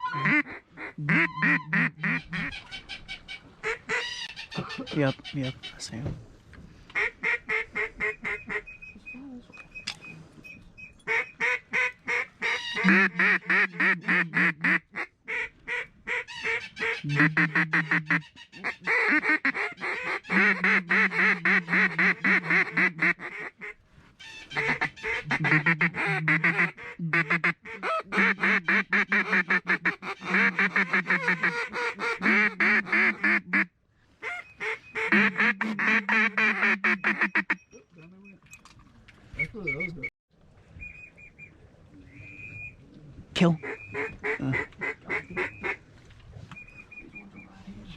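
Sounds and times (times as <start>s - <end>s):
duck call quacking: 0.0s - 5.6s, 11.1s - 23.7s, 24.3s - 37.6s.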